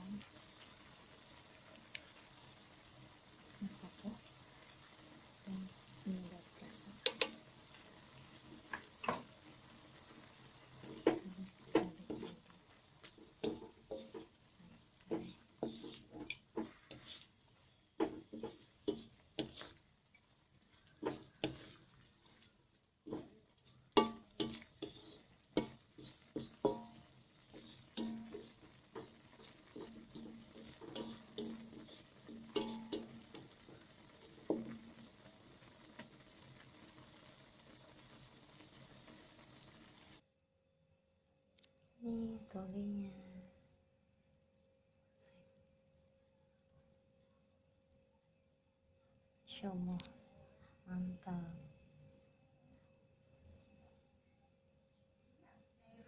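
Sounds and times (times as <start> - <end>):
food sizzling: 0.0 - 40.2, 42.0 - 43.5, 49.5 - 50.2, 50.8 - 53.8
spatula scraping a pan: 7.2 - 37.3.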